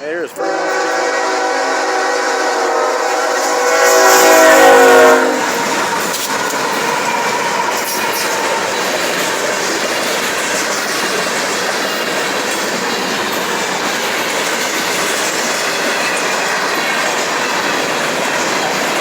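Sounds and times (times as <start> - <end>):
locomotive air horn: 0.4 - 6.2
train wheels clattering on rails: 2.0 - 19.0.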